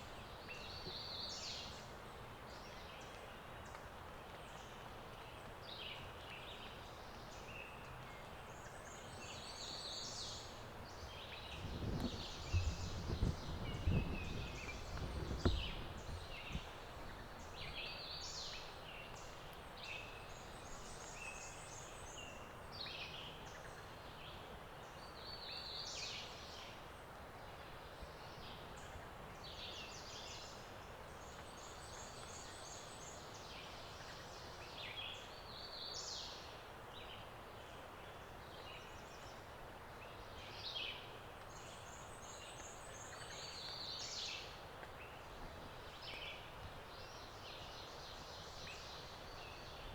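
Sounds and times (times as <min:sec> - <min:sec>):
songbirds singing: 0:04.3 - 0:26.6
low thuds and rumbles: 0:11.5 - 0:16.7.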